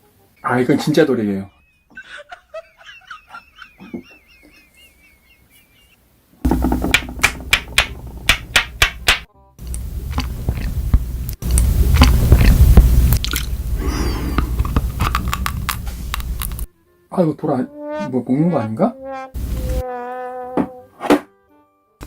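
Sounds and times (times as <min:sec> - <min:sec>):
crunching hard food: 0:09.0 - 0:16.7.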